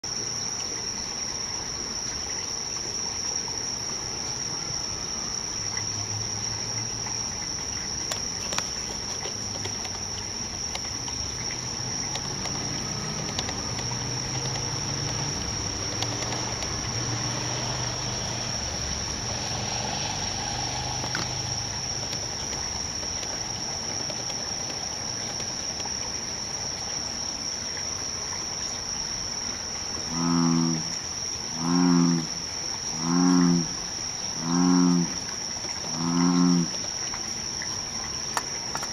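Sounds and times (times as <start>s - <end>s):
high-pitched insect trill: 0.0s - 38.9s
bullfrog calls: 30.0s - 36.9s.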